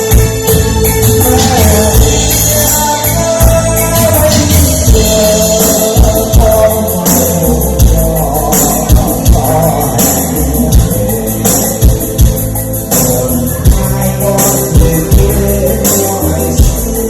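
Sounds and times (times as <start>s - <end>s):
backing track with bass beat: 0.0s - 17.0s
person singing long notes: 0.0s - 17.0s.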